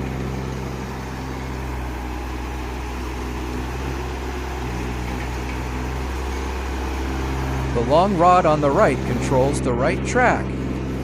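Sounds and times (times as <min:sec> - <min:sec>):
excavator engine running: 0:00.0 - 0:11.0.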